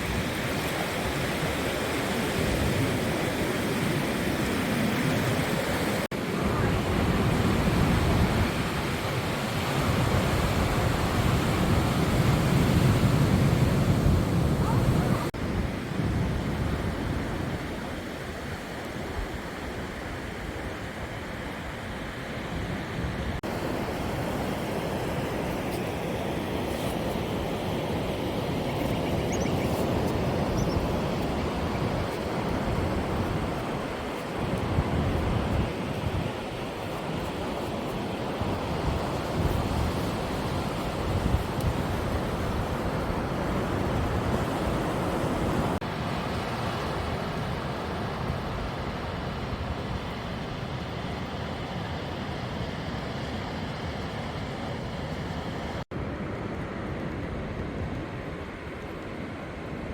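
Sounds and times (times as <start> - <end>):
wind on the microphone: 0.0 - 21.2, 22.0 - 51.2
surf on a rocky shore: 0.0 - 59.9.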